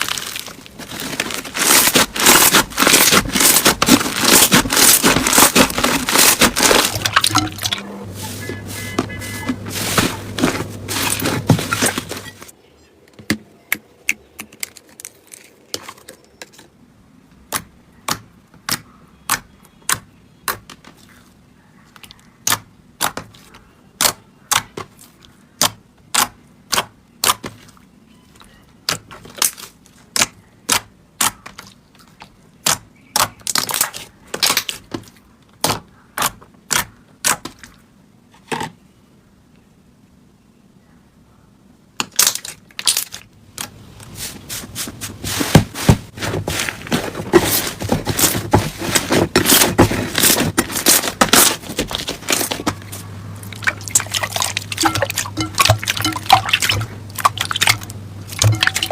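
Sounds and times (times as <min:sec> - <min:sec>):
slime crackling and popping: 0:00.0 - 0:07.7.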